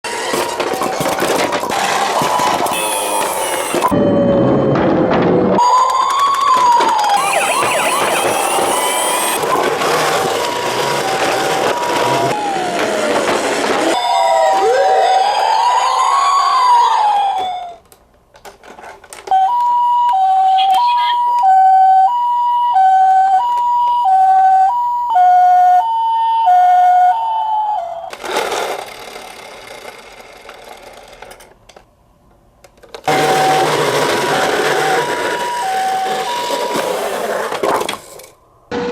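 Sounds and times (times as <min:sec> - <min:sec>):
toy car wheels rattling: 0:00.2 - 0:03.9
two-tone ambulance siren: 0:01.8 - 0:17.8, 0:19.3 - 0:28.1, 0:33.1 - 0:37.2
wailing siren: 0:01.8 - 0:17.8, 0:19.3 - 0:28.1, 0:33.1 - 0:37.1.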